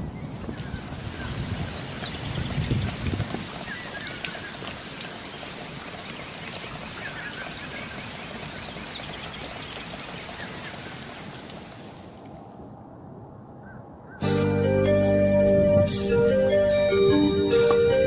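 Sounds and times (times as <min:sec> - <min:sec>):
steady rushing water: 0:00.0 - 0:12.6.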